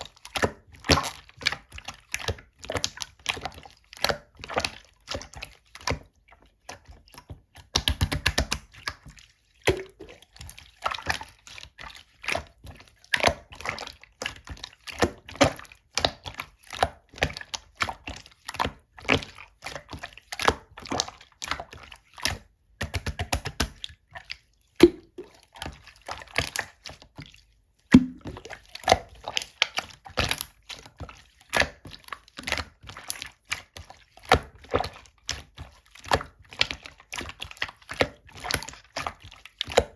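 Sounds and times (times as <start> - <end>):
air bubble pops: 9.7 - 10.2, 24.8 - 25.4, 27.9 - 28.4
slime squished by hand: 24.8 - 26.8.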